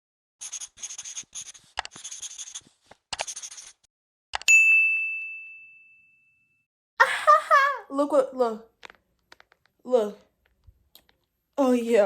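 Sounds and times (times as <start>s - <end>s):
scratchy strokes: 0.4s - 3.9s
bright ding: 4.5s - 6.6s.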